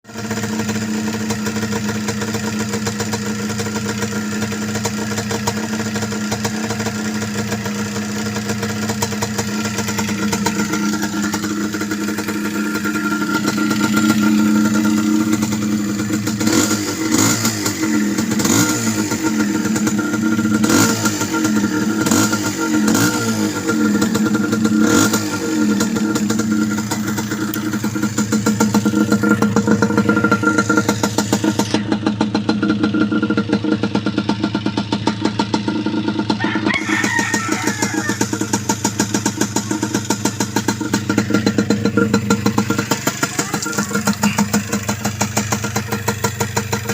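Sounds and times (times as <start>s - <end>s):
motorcycle engine idling: 0.0s - 46.9s
engine throttle revs: 9.4s - 31.9s.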